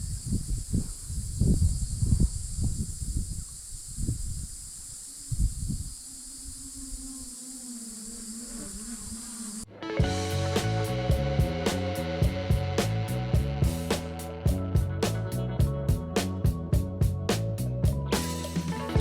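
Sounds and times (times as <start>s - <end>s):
high insect chorus: 0.0s - 9.7s
low rumbling: 10.0s - 19.0s.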